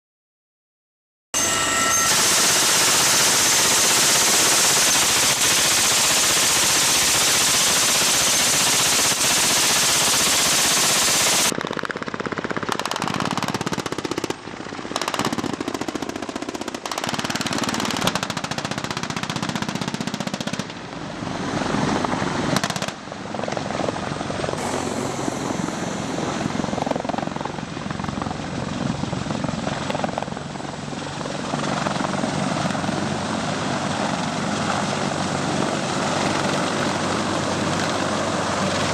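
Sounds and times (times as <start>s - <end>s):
helicopter noise: 1.4s - 15.1s, 23.3s - 38.9s
automatic gunfire: 2.1s - 20.7s.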